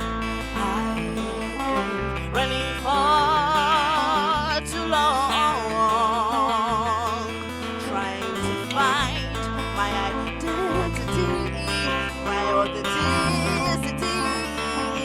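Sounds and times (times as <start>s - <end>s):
acoustic guitar: 0.0s - 15.0s
low bass notes: 0.0s - 15.0s
woman singing with vibrato: 0.2s - 15.0s.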